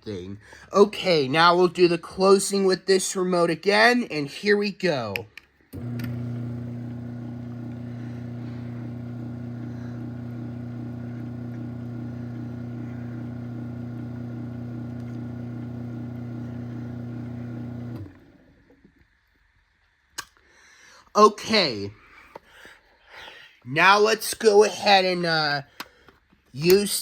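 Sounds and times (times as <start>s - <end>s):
garage door opener motor humming: 5.8s - 18.5s.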